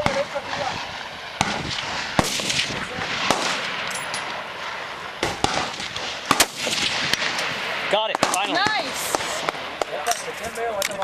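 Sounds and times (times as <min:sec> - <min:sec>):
rifle shots with echo: 0:00.0 - 0:10.6.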